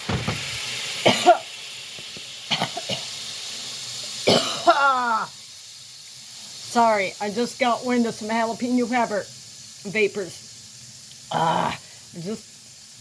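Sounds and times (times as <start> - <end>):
pan sizzling: 0.0 - 13.0
man coughing and clearing throat: 1.0 - 1.5, 2.5 - 3.1, 4.2 - 5.1.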